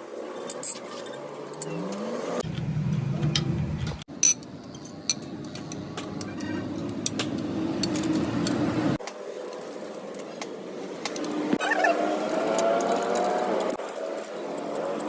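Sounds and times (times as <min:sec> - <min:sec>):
metal tools clinking: 0:00.3 - 0:02.1, 0:04.1 - 0:08.3, 0:12.1 - 0:14.8.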